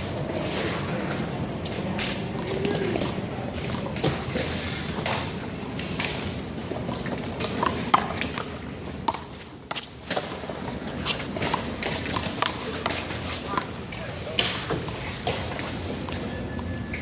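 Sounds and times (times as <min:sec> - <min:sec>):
shoe squeaks: 0:16.1 - 0:17.0.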